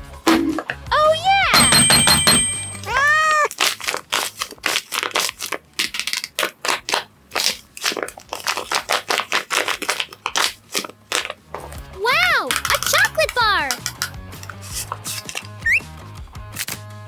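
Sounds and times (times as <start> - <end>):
meow-like call: 2.9 - 3.5
paper crinkling: 3.0 - 11.8, 12.4 - 15.7.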